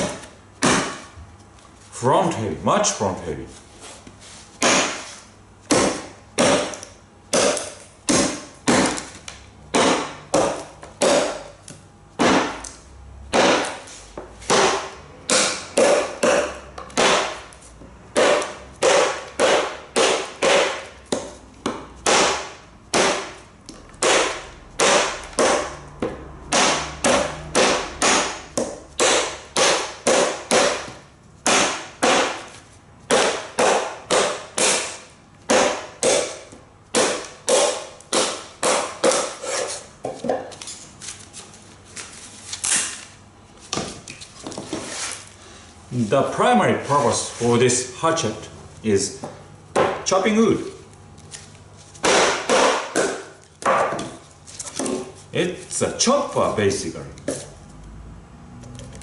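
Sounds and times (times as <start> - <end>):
hatchet chopping wood: 0.0 - 1.1, 4.6 - 5.1, 5.7 - 11.6, 12.2 - 13.8, 14.4 - 40.6, 49.7 - 50.0, 52.0 - 54.2.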